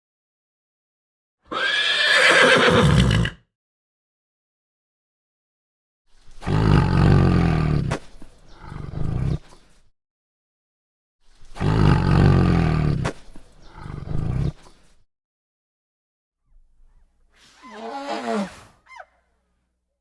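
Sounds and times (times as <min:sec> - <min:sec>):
large animal roaring: 0:06.4 - 0:07.9, 0:11.6 - 0:13.0, 0:13.7 - 0:14.6.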